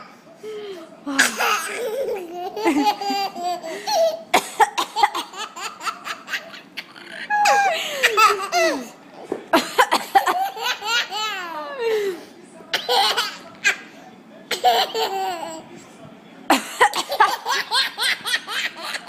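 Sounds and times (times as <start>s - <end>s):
woman coughing: 1.2s - 1.7s, 9.6s - 10.4s
baby laughing hysterically: 1.2s - 9.0s, 9.8s - 11.7s, 12.8s - 13.4s, 14.5s - 15.6s, 16.5s - 19.0s.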